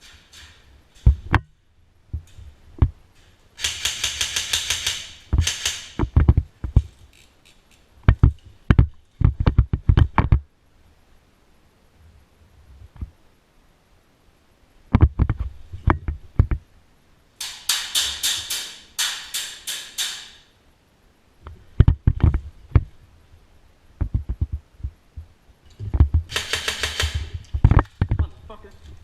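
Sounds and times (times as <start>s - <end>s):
airsoft guns firing: 3.6s - 6.0s, 26.3s - 27.4s.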